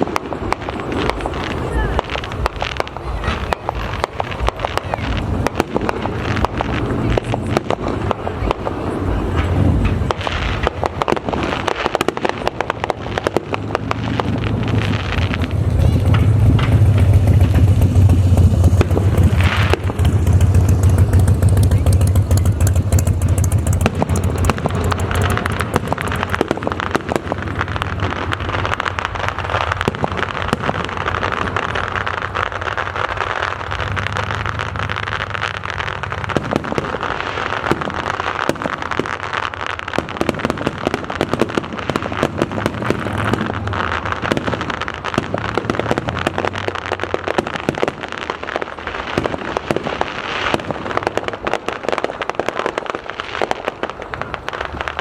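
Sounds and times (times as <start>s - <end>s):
fireworks crackling: 0.0s - 55.0s
low rumble: 13.4s - 29.9s.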